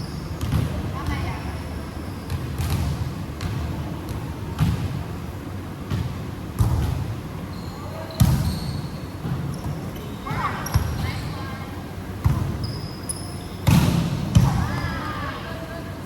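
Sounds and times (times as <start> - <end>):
basketball bouncing: 2.3 - 4.9, 5.9 - 7.1, 8.2 - 8.6
sneakers squeaking on floor: 6.6 - 11.5, 12.2 - 14.6.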